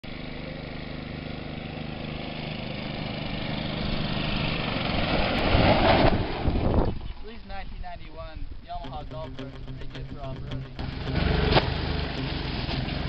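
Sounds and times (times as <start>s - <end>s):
golf cart engine running: 0.0s - 5.5s, 9.0s - 13.0s.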